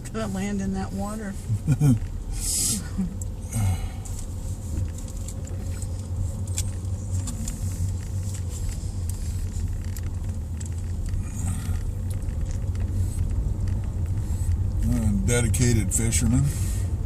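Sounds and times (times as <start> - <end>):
engine and tyre rumble: 0.0 - 17.0
light clicks and rattles: 4.1 - 15.0.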